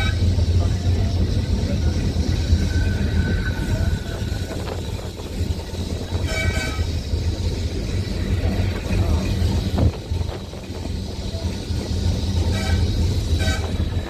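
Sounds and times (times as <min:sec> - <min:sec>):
tram wheels and motors rumbling: 0:00.0 - 0:14.0
horn toot: 0:06.2 - 0:07.0, 0:12.5 - 0:14.0.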